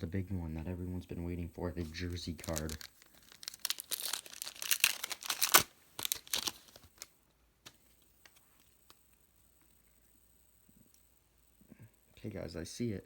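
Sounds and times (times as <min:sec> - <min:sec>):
wrapper tearing and crinkling: 0:02.0 - 0:07.1.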